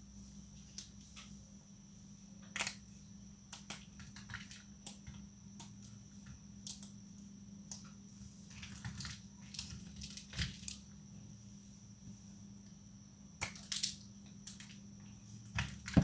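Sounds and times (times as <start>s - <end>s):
dried soap snapping: 2.5s - 2.8s, 3.5s - 5.0s.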